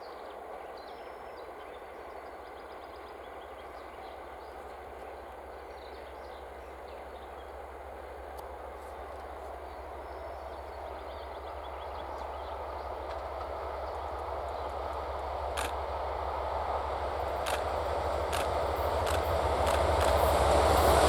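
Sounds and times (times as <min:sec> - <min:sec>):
diesel train rumbling on rails: 0:00.0 - 0:21.0
sharp clicks: 0:17.4 - 0:20.4.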